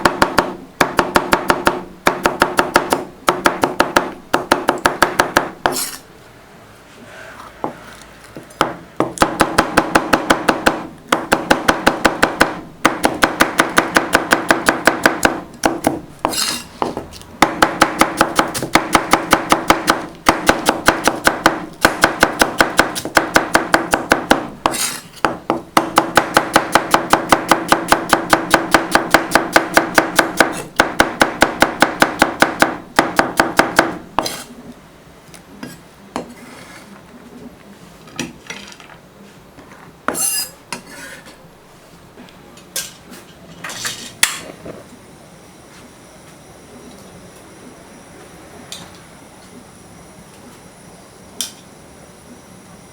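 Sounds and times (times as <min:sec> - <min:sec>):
knife chopping vegetables on board: 0:00.0 - 0:06.0, 0:08.6 - 0:34.4.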